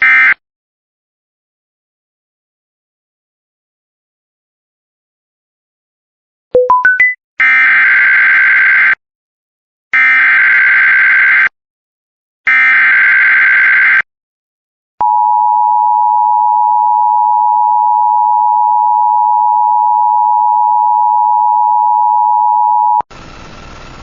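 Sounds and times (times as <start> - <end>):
two-tone alert signal: 6.6 - 7.2.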